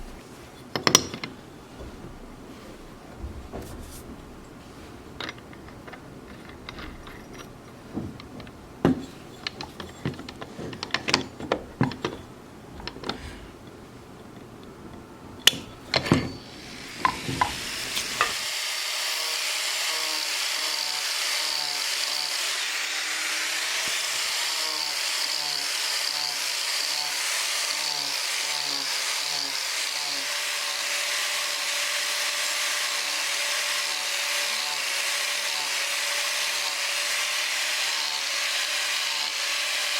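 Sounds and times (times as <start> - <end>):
knocks and clicks of wood and tools: 0.0 - 2.3, 5.2 - 14.5, 15.4 - 16.4, 17.0 - 18.4
power carving tool grinding wood: 16.4 - 39.9.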